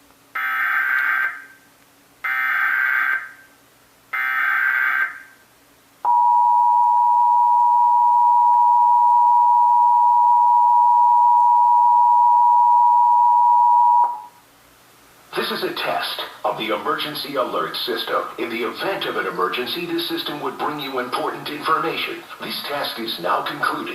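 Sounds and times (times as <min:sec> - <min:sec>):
steady two-tone attention signal: 0:06.1 - 0:14.3.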